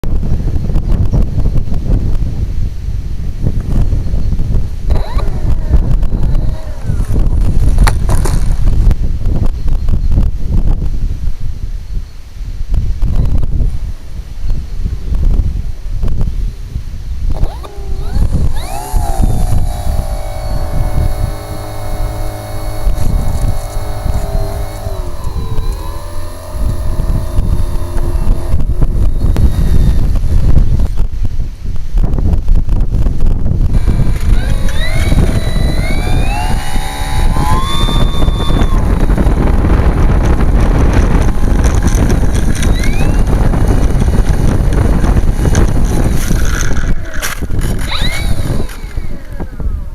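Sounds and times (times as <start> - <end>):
wind buffeting microphone: 0.0 - 12.0, 12.6 - 49.9
electric motor and propeller whine: 3.8 - 9.0, 17.3 - 31.3, 33.2 - 49.9.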